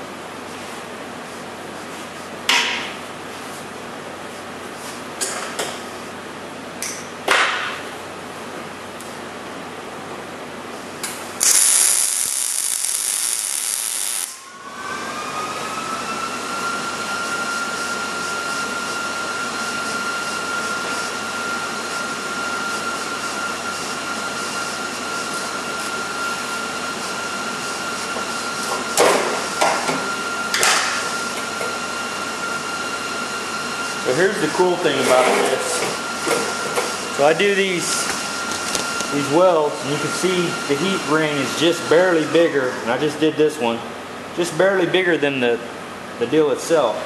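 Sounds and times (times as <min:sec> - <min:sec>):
power tool motor whine: 0:11.4 - 0:19.1.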